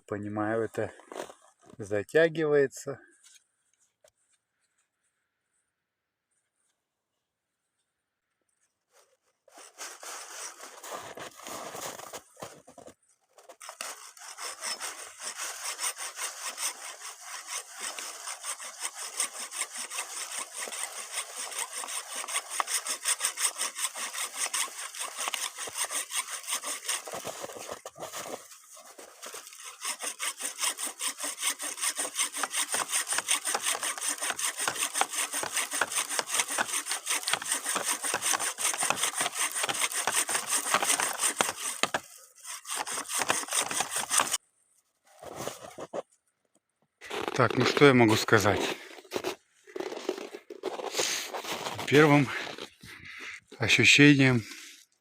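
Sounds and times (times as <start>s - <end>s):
hand saw cutting wood: 9.5s - 44.4s, 47.0s - 55.0s.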